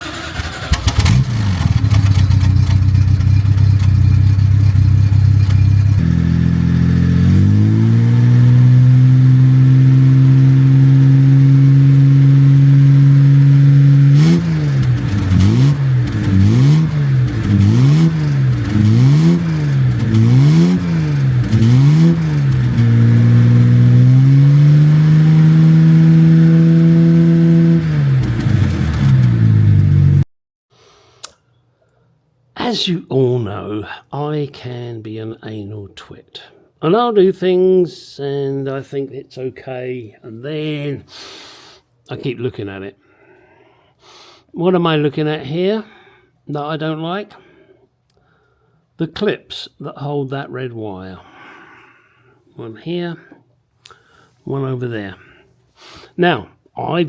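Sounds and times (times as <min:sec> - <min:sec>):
car engine idling and revving: 0:00.0 - 0:30.2.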